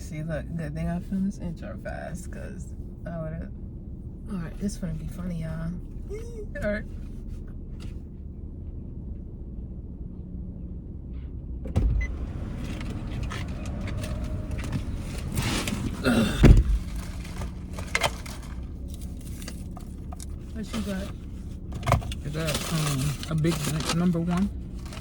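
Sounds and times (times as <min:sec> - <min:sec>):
car engine idling hum: 0:00.0 - 0:25.0
car door thump: 0:11.6 - 0:18.0
rustling and clatter: 0:12.2 - 0:25.0.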